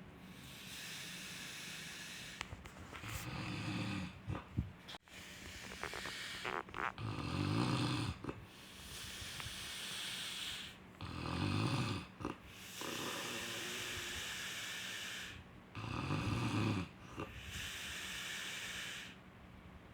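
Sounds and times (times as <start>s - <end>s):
breathy hissing breaths: 0.2s - 7.1s, 7.9s - 15.9s, 16.8s - 19.3s
person snoring: 5.1s - 19.2s.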